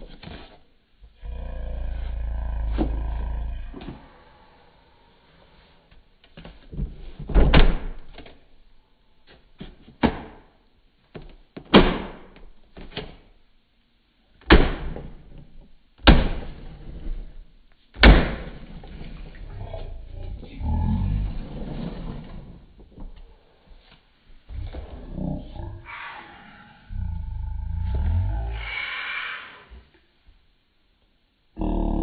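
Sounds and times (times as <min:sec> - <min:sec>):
loud sharp knocks: 0:14.5 - 0:15.1, 0:16.0 - 0:16.6, 0:18.0 - 0:18.6.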